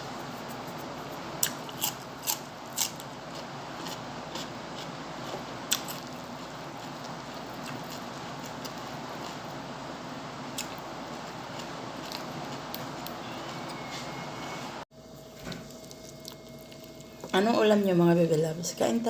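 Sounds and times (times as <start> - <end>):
crunching crisp food: 1.4 - 9.6, 10.5 - 13.2.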